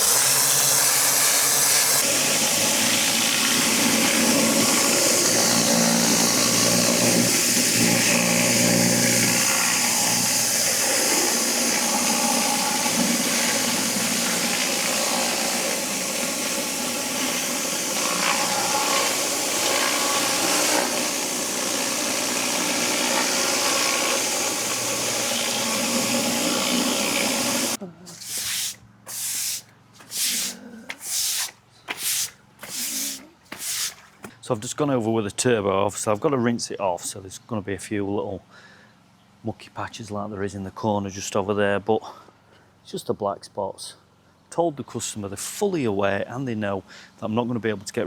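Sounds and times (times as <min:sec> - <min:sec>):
pressure washer machine hum: 0:00.0 - 0:34.0
water spray hissing: 0:26.4 - 0:34.1.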